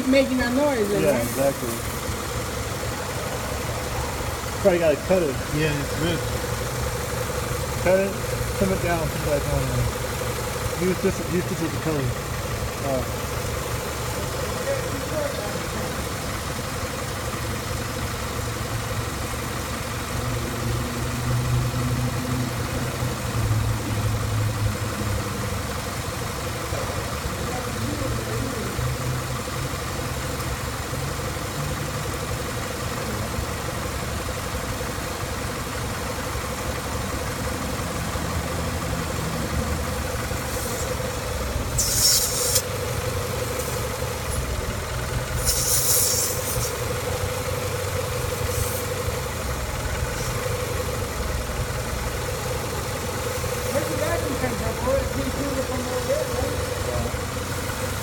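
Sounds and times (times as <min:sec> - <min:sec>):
car engine idling: 0:00.0 - 0:58.0
short hissing bursts: 0:41.7 - 0:42.7, 0:45.4 - 0:46.9, 0:48.3 - 0:48.9.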